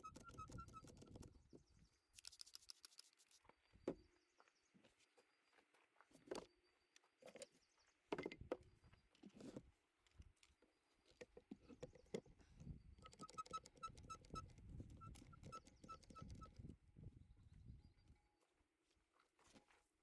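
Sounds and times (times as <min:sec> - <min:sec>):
high chirping clicks: 0:00.0 - 0:01.3, 0:02.2 - 0:03.3, 0:13.0 - 0:16.6.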